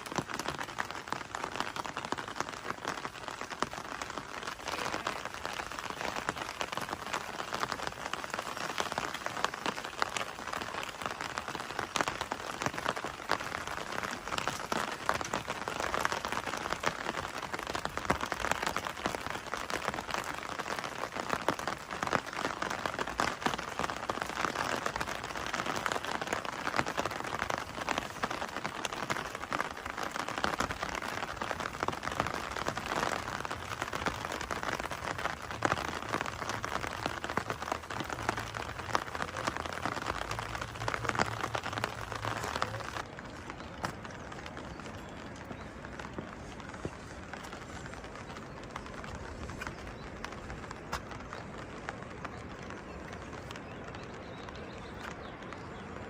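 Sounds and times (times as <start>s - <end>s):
rain pattering: 0.0s - 56.0s.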